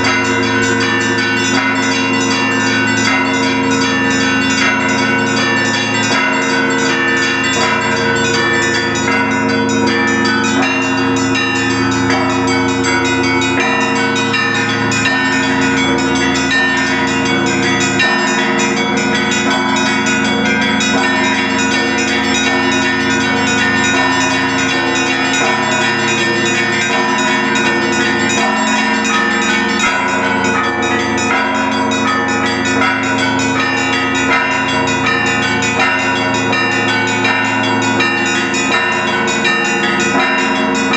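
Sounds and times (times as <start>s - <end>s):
church bells pealing: 0.0s - 40.9s.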